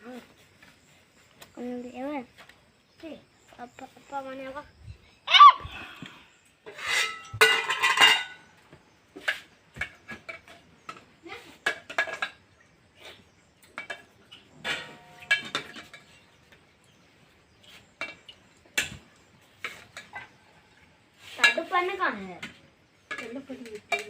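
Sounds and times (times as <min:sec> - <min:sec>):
metal utensils and pots clattering: 0:06.6 - 0:24.0
metal ringing: 0:14.6 - 0:16.0.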